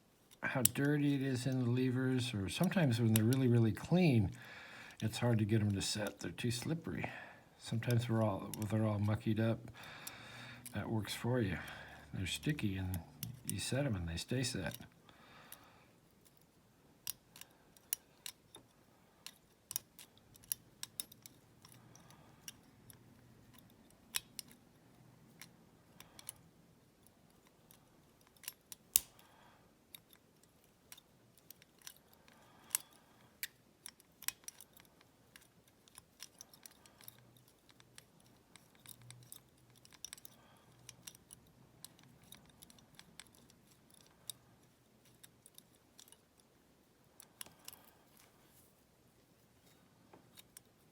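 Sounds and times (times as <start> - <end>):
lock pick clicking in padlock: 19.2 - 24.7, 27.4 - 29.3, 30.9 - 46.4.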